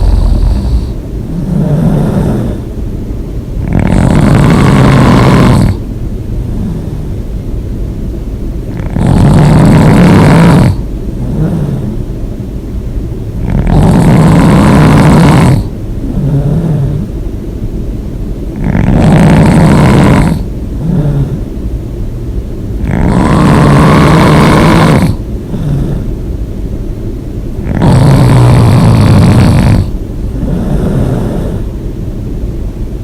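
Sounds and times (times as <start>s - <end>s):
person snoring loudly: 0.0s - 2.7s, 3.6s - 5.8s, 8.7s - 12.0s, 13.4s - 17.1s, 18.6s - 21.5s, 22.8s - 26.1s, 27.6s - 31.7s
quiet breathing: 0.0s - 2.8s, 3.7s - 7.5s, 8.8s - 12.2s, 13.4s - 17.3s, 18.8s - 21.6s, 22.8s - 26.4s, 28.0s - 31.8s.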